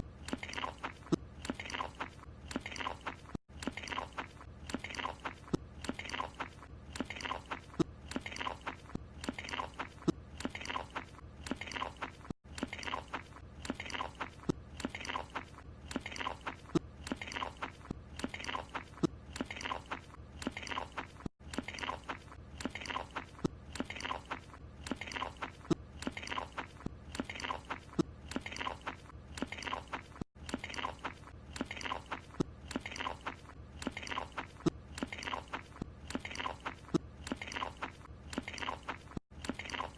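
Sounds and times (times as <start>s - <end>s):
open-mouthed munching: 0.0s - 39.9s.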